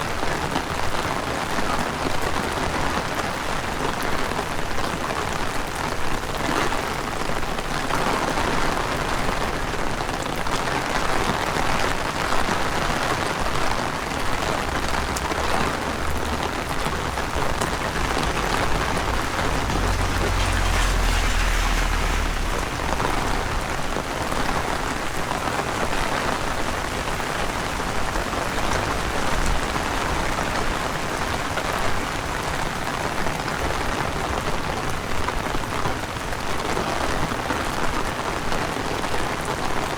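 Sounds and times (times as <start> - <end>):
heavy rain falling: 0.0 - 39.9
low rumble: 14.7 - 25.2.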